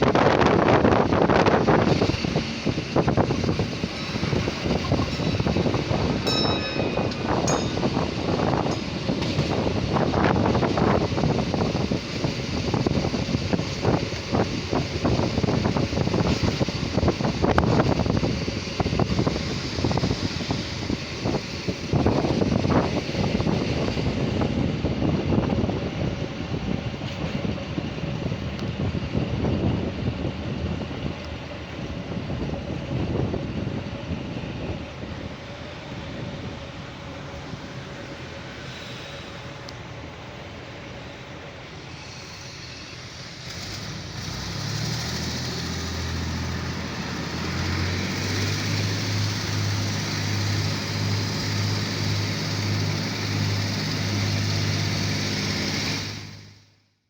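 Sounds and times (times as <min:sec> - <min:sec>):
wheels clattering over rails: 0:00.0 - 0:24.5
diesel railcar rumble: 0:00.0 - 0:57.0.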